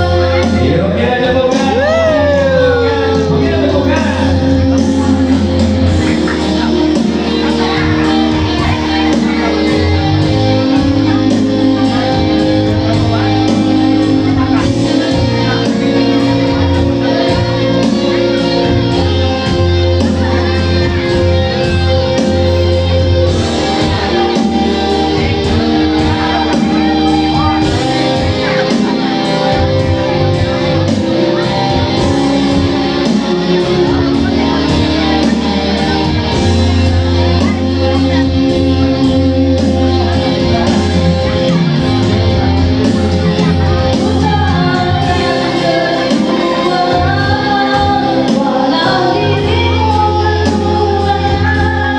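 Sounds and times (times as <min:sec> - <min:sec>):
guitar: 0:00.0 - 0:51.9
steady bass line: 0:00.0 - 0:51.9.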